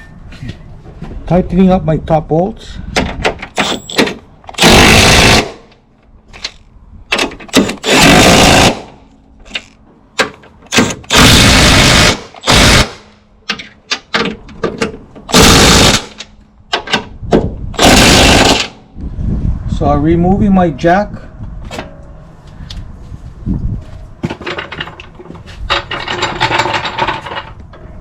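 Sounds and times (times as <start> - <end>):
impact wrench bursts: 3.6 - 5.7, 7.5 - 9.0, 10.7 - 13.1, 15.3 - 16.2, 17.8 - 18.8.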